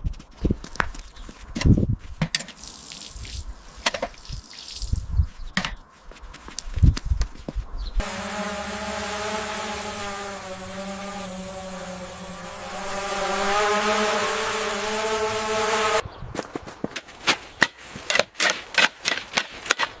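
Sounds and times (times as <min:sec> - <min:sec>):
small motor running: 0:08.0 - 0:16.0.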